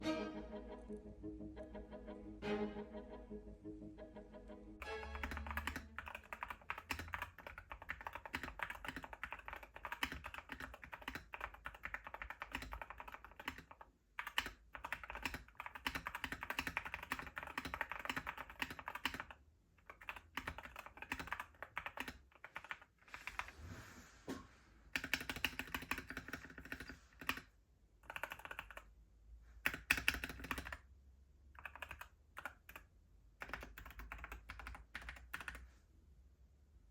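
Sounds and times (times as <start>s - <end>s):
mechanical keyboard typing: 5.1s - 23.5s, 25.0s - 28.9s, 29.6s - 30.9s, 31.6s - 35.6s.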